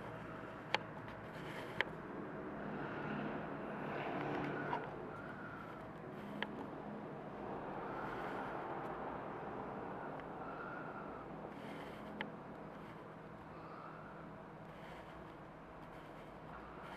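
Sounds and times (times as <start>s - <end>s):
cooling fans whooshing: 0.0s - 16.9s.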